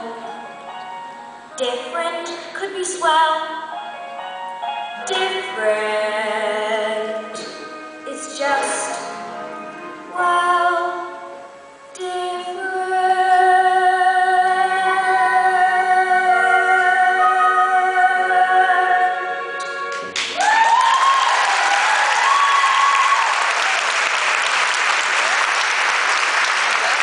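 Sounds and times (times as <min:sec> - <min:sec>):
girl singing: 0:01.6 - 0:03.7, 0:05.0 - 0:09.4, 0:10.1 - 0:19.6
audience applause: 0:19.9 - 0:27.0.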